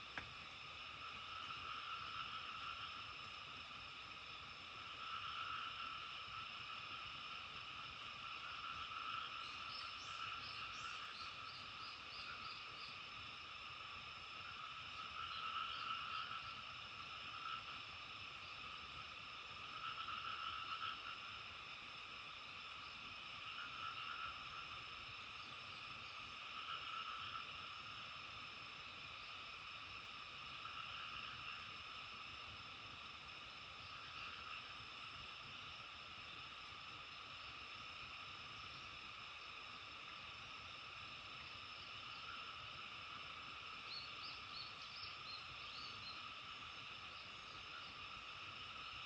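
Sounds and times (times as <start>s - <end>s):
chorus of frogs calling: 0.0s - 36.4s, 37.1s - 49.0s.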